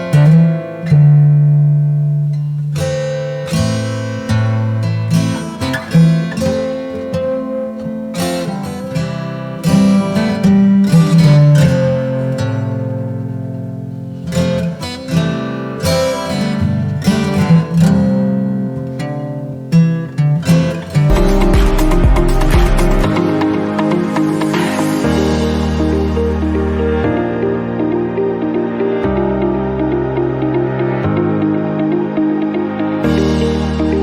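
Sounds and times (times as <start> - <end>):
plucked acoustic guitar melody: 0.0 - 34.0.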